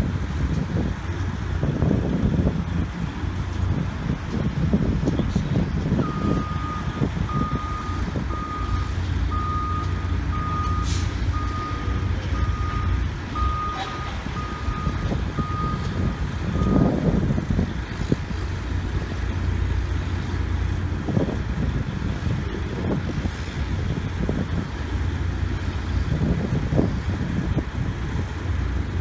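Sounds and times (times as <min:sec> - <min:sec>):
diesel engine running: 0:00.0 - 0:29.0
reversing alarm beeping: 0:06.0 - 0:17.0.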